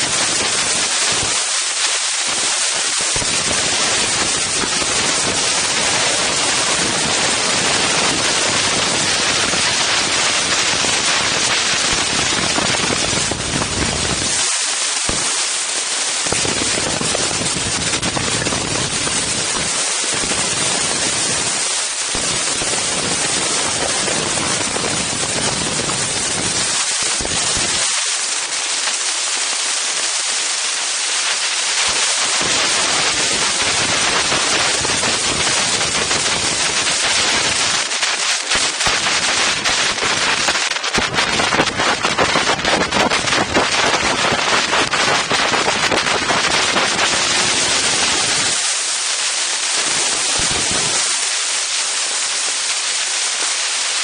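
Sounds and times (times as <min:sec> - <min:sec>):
strong wind buffeting microphone: 0:02.8 - 0:15.4, 0:16.2 - 0:28.0, 0:31.9 - 0:37.9, 0:38.6 - 0:48.6, 0:49.8 - 0:51.2.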